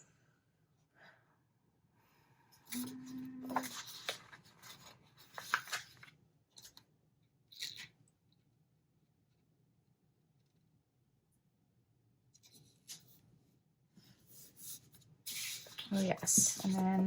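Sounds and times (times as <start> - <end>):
paper crackling and rustling: 3.5 - 6.8, 14.4 - 17.0.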